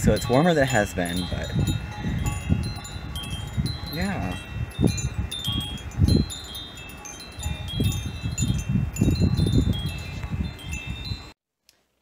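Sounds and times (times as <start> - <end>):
wind buffeting microphone: 0.0 - 11.3
wind chimes ringing: 0.0 - 11.4.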